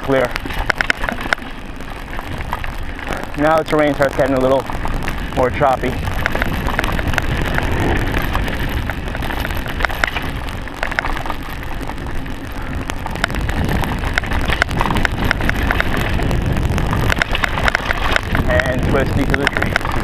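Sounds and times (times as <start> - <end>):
bike rattling and clicking: 0.0 - 20.0
tyres on rough ground: 0.0 - 20.0
wind buffeting microphone: 0.0 - 20.0.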